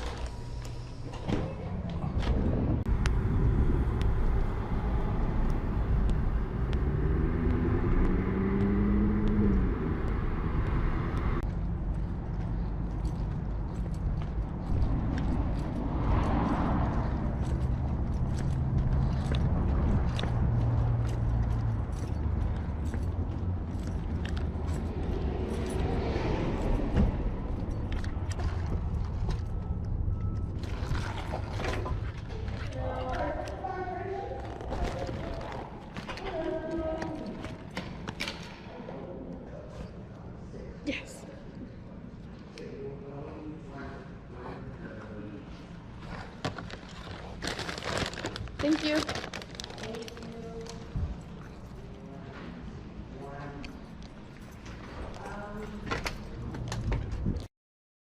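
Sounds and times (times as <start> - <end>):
road rumble: 0.0 - 38.8, 44.9 - 57.5
car engine accelerating: 2.3 - 11.6.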